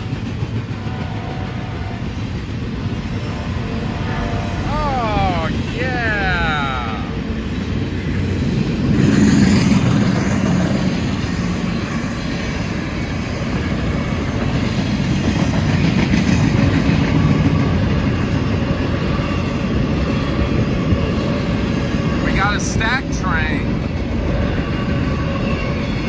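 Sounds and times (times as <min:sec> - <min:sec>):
train wheels on rails: 0:00.0 - 0:26.0.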